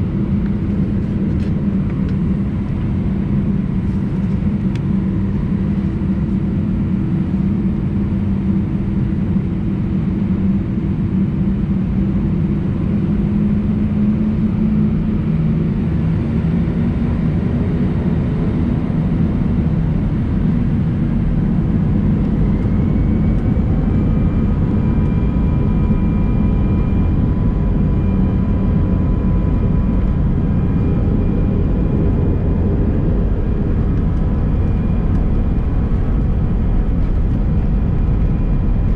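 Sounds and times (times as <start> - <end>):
jet cabin low rumble: 0.0 - 38.9.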